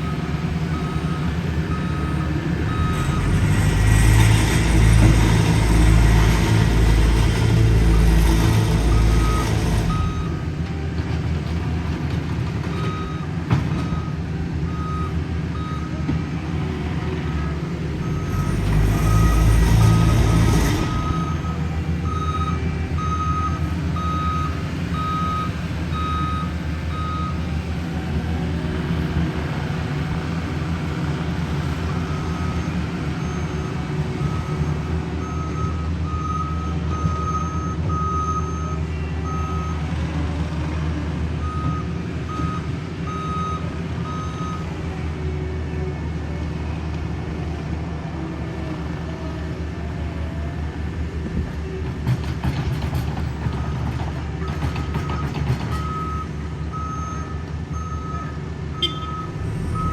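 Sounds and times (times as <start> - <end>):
diesel engine rumble: 0.0 - 59.9
backup alarm beeping: 58.8 - 59.9.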